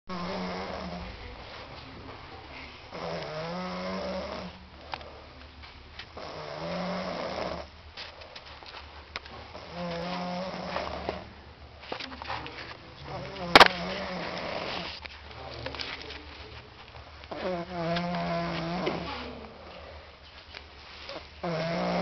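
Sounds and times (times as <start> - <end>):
woman snoring: 0.1 - 1.1, 2.9 - 4.6, 6.2 - 7.7, 9.5 - 11.2, 13.2 - 14.9, 17.3 - 19.5, 21.4 - 22.0
quiet breathing: 0.1 - 22.0.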